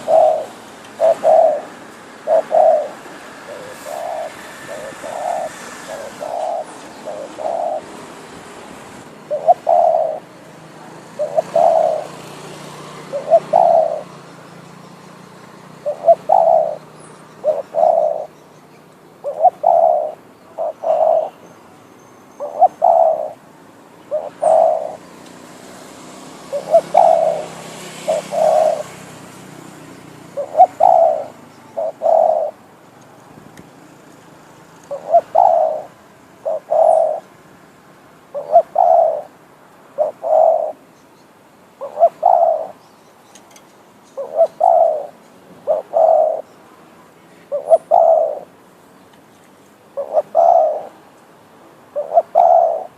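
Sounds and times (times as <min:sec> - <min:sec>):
dove cooing: 0:00.0 - 0:08.1, 0:09.0 - 0:14.3, 0:15.7 - 0:18.4, 0:19.2 - 0:21.4, 0:22.4 - 0:23.4, 0:24.0 - 0:25.2, 0:26.4 - 0:29.3, 0:29.9 - 0:32.6, 0:34.9 - 0:37.3, 0:38.3 - 0:40.8, 0:41.8 - 0:42.8, 0:44.2 - 0:46.5, 0:47.4 - 0:48.6, 0:50.0 - 0:51.0, 0:51.9 - 0:52.9.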